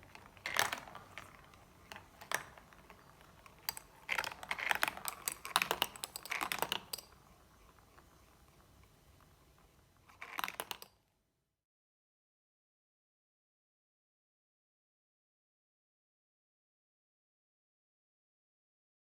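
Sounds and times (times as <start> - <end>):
marbles rattling down a track: 0.1 - 7.1, 10.1 - 10.9.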